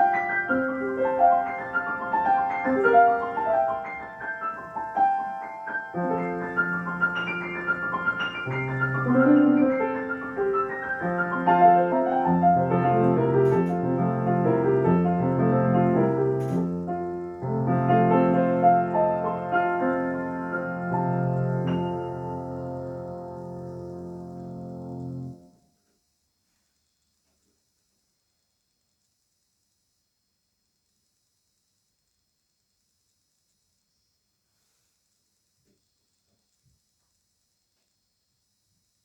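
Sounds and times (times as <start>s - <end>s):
solo piano classical music: 0.0s - 25.6s.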